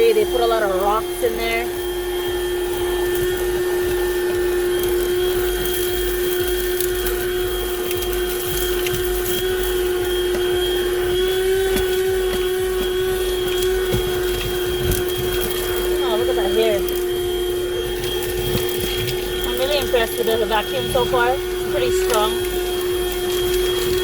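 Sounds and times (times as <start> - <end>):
grit rattling in nozzle: 0.0 - 24.0
handheld vacuum motor whine: 0.0 - 24.0.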